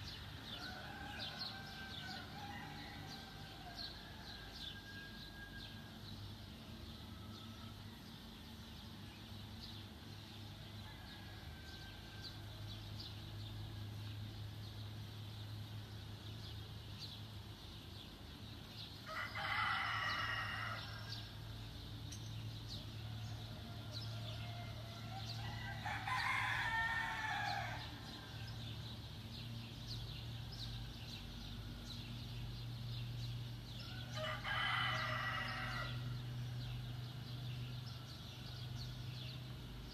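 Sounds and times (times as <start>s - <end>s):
small birds chirping: 0.0s - 39.9s
rooster crowing: 0.5s - 6.0s, 7.0s - 8.0s, 10.8s - 12.7s, 19.1s - 21.3s, 23.0s - 28.6s, 33.8s - 36.3s.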